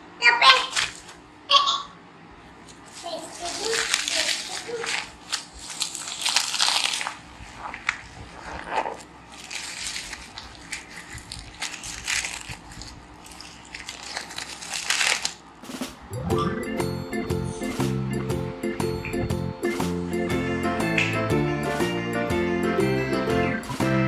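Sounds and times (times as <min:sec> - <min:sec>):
velcro ripping apart: 0:02.9 - 0:15.5
music: 0:15.6 - 0:24.0.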